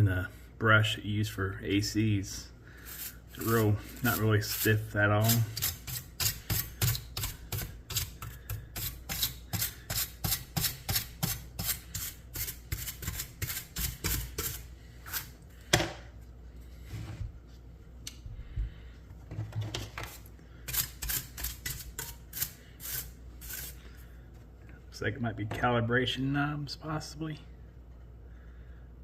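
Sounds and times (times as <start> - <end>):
brush scrubbing dust: 2.8 - 8.2, 20.7 - 23.8.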